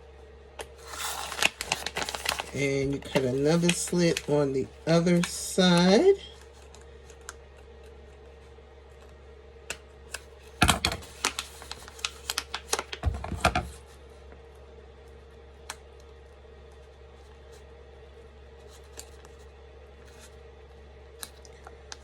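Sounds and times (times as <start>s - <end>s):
scissors snipping plastic pouch: 0.6s - 4.2s.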